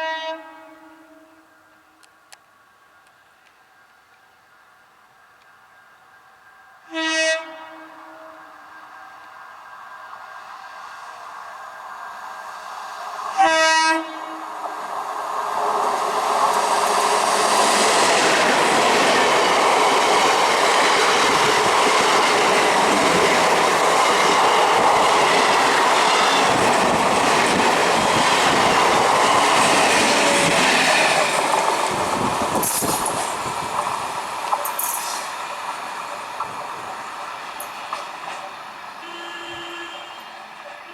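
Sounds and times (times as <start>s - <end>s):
train horn blast: 0.0s - 2.0s, 6.9s - 8.6s, 13.3s - 14.5s, 39.0s - 40.9s.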